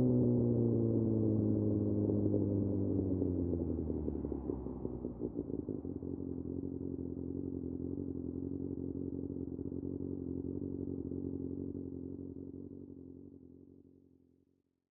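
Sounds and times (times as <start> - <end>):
motorcycle engine idling: 0.8 - 14.4.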